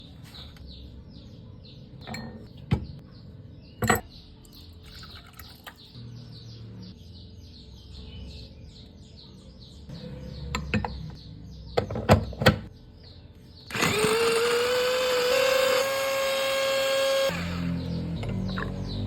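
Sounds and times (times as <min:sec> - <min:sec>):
bird chirping: 0:00.0 - 0:19.0.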